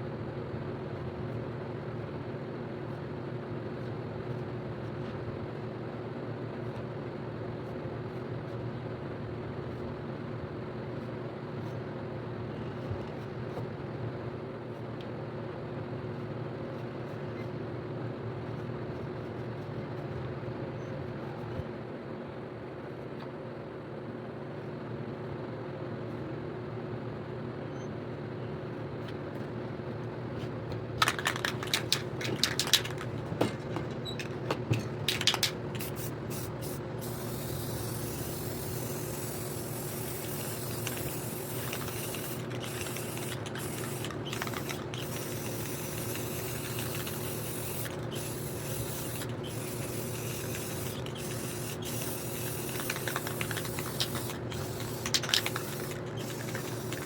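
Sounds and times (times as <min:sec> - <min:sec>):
steady low hum: 0:28.6 - 0:57.0
sharp clicks and knocks: 0:30.7 - 0:36.2, 0:40.1 - 0:57.0
aerosol spray can hissing: 0:31.0 - 0:57.0.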